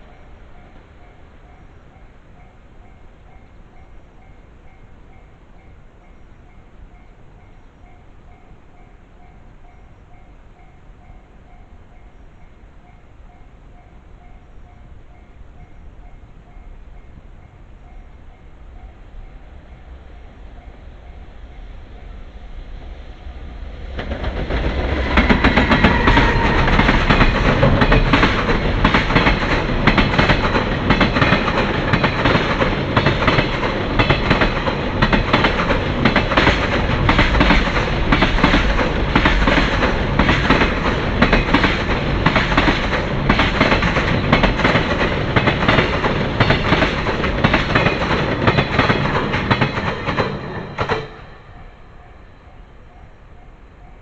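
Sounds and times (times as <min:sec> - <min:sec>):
train wheels clattering over rail joints: 0:23.5 - 0:51.8.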